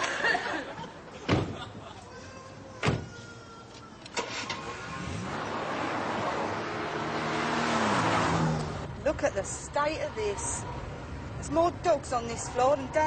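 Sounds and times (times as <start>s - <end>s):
car door slamming: 1.2s - 1.7s, 2.8s - 3.1s
car engine starting and running: 4.1s - 11.4s.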